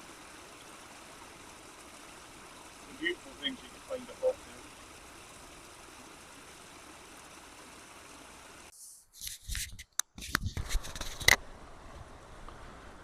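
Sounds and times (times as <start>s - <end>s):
steady hiss: 0.0s - 9.1s.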